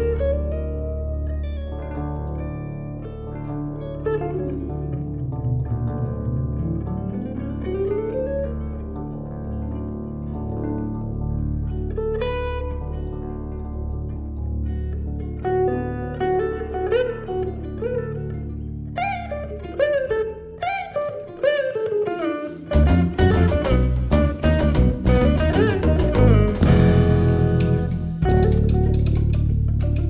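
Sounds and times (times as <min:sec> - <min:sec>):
guitar playing bent notes: 0:00.0 - 0:30.0
jazz-rock band music: 0:22.1 - 0:30.0
drums and cymbals: 0:22.7 - 0:29.2
held bass note: 0:22.7 - 0:30.0.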